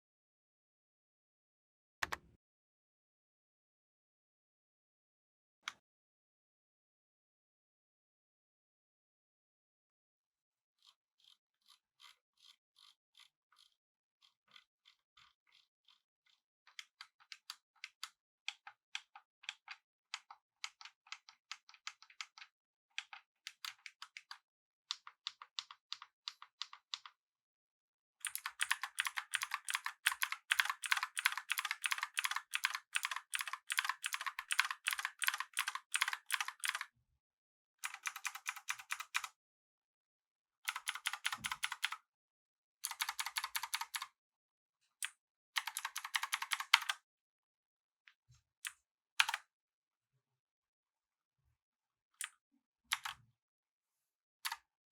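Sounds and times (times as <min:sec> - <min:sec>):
clicky mechanical keyboard typing: 0:28.2 - 0:36.9, 0:37.8 - 0:39.3, 0:40.7 - 0:42.0, 0:42.8 - 0:44.1, 0:45.6 - 0:47.0, 0:49.2 - 0:49.4, 0:52.9 - 0:53.2.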